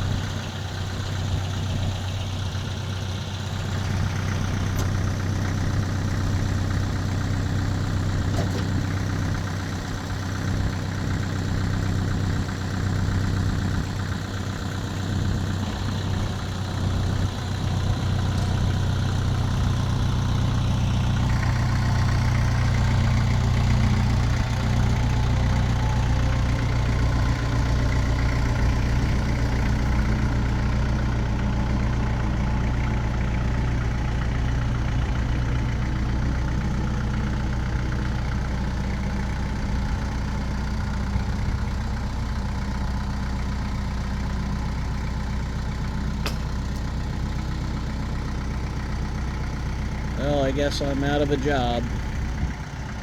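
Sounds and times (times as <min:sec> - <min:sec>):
tractor diesel engine running: 0:00.0 - 0:53.0.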